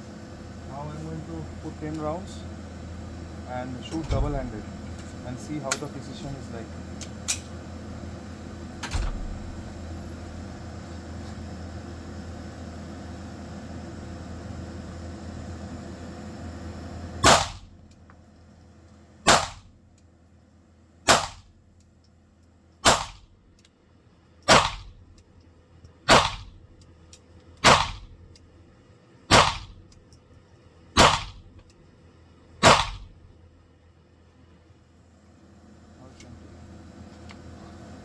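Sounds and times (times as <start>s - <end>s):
pistol shots: 17.2s - 17.7s, 19.2s - 19.7s, 21.1s - 21.5s, 22.8s - 23.3s, 24.5s - 25.0s, 26.1s - 26.6s, 27.6s - 28.2s, 29.3s - 29.8s, 31.0s - 31.5s, 32.6s - 33.2s.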